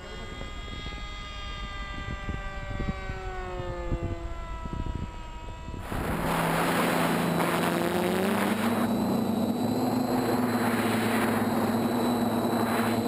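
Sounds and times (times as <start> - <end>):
model aircraft motor whine: 0.0 - 13.0
rushing noise: 5.8 - 13.0.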